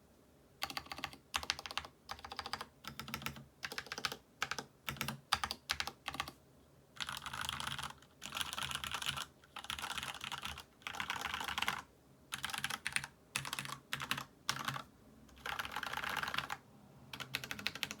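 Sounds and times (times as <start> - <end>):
typing on mechanical keyboard: 0.6 - 6.4, 7.0 - 18.0.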